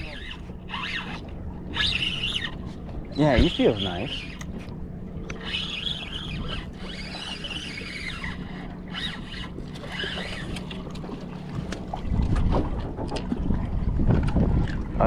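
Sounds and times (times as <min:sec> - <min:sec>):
steady low hum: 0:00.0 - 0:15.0
birds chirping: 0:00.1 - 0:04.6.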